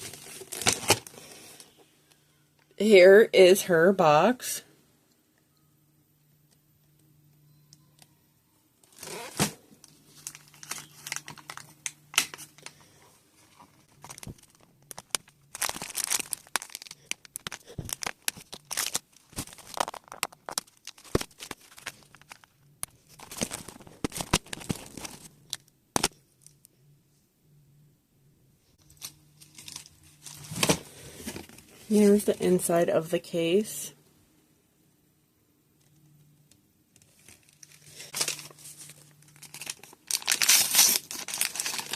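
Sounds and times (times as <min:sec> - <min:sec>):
packaging being torn and crinkled: 0:00.0 - 0:01.2, 0:08.9 - 0:12.8, 0:13.8 - 0:22.5, 0:23.1 - 0:26.6, 0:28.9 - 0:30.8, 0:37.0 - 0:41.9.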